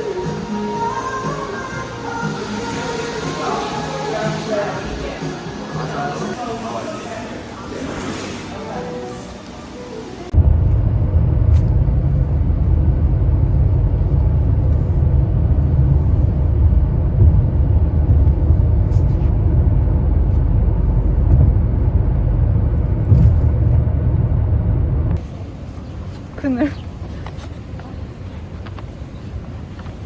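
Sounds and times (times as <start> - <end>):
car road rumble from inside: 10.3 - 27.0.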